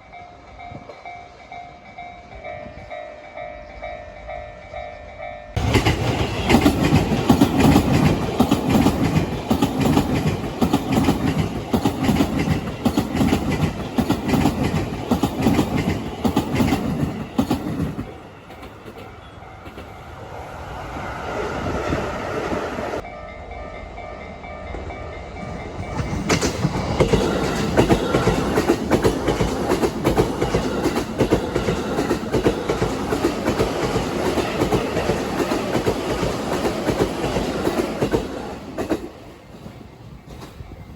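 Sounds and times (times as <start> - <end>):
train wheels clattering over rail joints: 5.6 - 20.0, 25.8 - 39.2.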